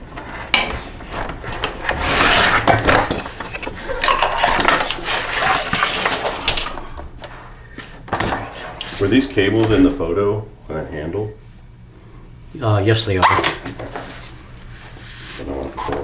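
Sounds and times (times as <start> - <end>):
metal parts clinking and clattering: 1.5 - 6.7.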